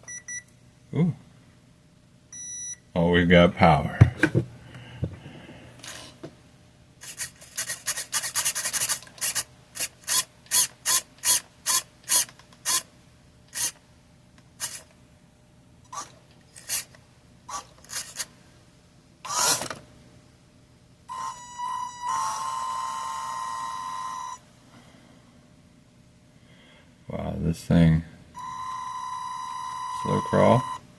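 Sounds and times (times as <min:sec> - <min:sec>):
electric motor and gear whir: 0:07.0 - 0:12.9, 0:15.9 - 0:18.3, 0:19.3 - 0:19.8, 0:21.1 - 0:24.4.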